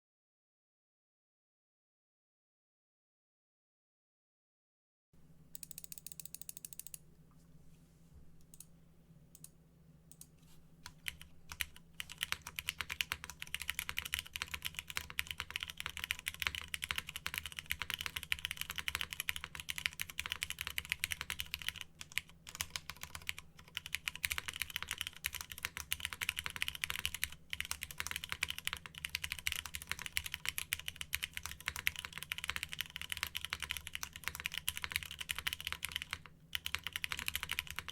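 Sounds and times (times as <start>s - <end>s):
typing on mechanical keyboard: 10.1s - 37.9s.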